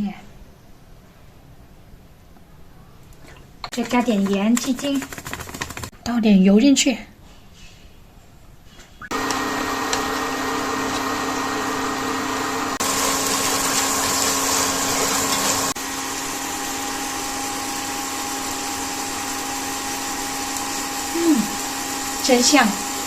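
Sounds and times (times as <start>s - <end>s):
electric food chopper motor: 9.1s - 23.0s.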